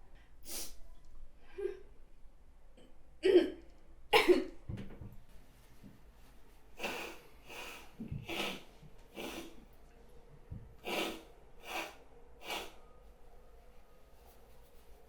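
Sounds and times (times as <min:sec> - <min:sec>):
sneezes and snorts: 0:06.8 - 0:09.6.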